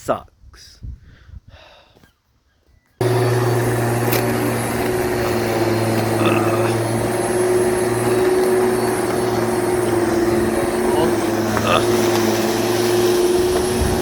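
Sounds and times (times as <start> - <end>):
lawn mower engine running: 3.0 - 14.0.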